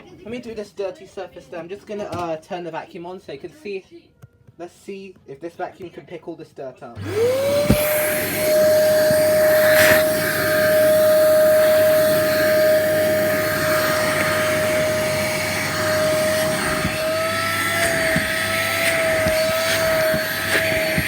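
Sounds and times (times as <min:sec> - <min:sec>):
vacuum cleaner whining: 0:07.0 - 0:21.0.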